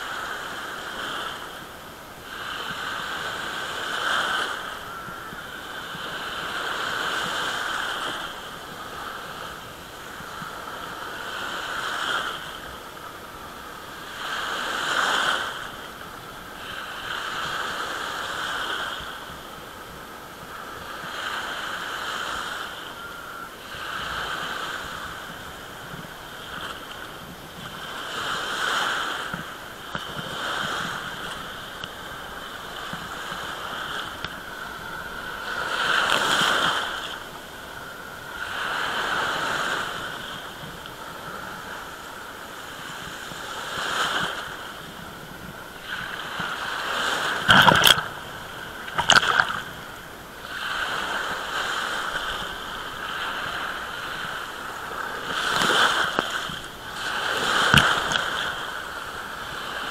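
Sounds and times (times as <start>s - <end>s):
small waves washing ashore: 0.0s - 59.9s
sharp water splashes: 47.4s - 48.2s, 48.9s - 49.7s.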